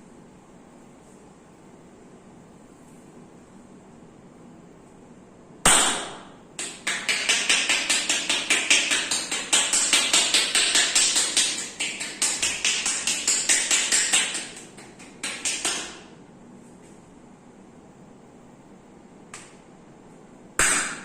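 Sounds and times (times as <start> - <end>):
hands slapping in massage: 5.7 - 16.1, 20.6 - 21.0.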